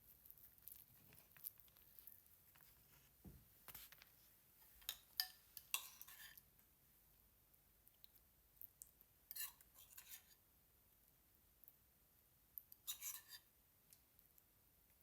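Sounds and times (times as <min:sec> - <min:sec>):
kitchen utensils clicking and scraping: 0:04.7 - 0:06.4, 0:12.9 - 0:13.4.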